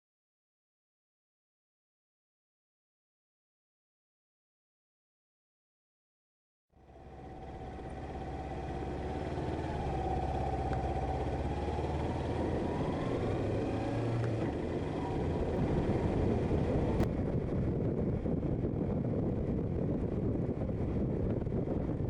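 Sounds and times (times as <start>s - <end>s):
motorcycle engine running: 6.8s - 22.0s
wind noise on microphone: 7.9s - 22.0s.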